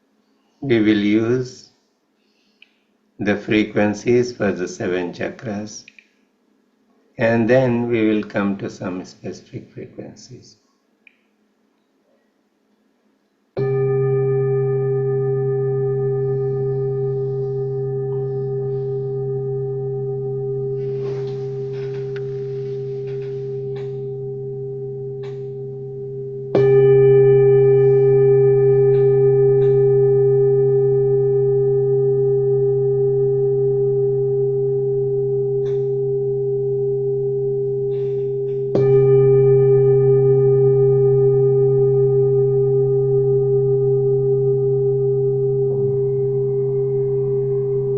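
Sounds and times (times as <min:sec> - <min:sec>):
singing bowl ringing: 0:13.6 - 0:47.9.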